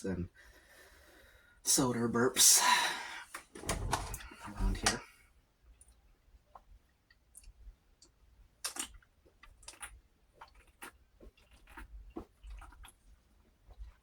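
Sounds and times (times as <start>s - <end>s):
mouth clicks and smacks: 5.8s - 13.0s.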